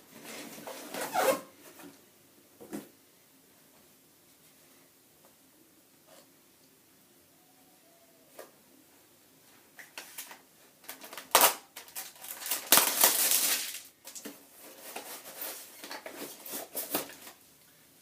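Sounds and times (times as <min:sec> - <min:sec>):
packaging rustling and crinkling: 0:09.8 - 0:17.4.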